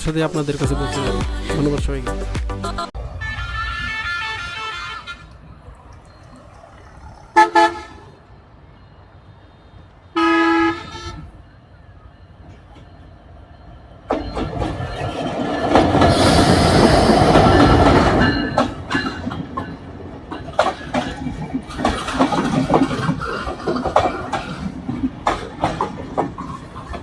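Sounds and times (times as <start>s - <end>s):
train rushing past: 3.0s - 27.0s
wheel clacks over rail joints: 14.0s - 27.0s.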